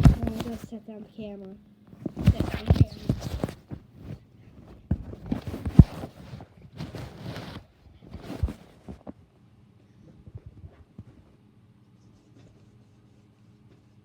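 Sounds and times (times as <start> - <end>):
camera handling knocks and rustling: 0.0 - 0.7, 2.0 - 7.6
faint low hum: 0.0 - 14.0.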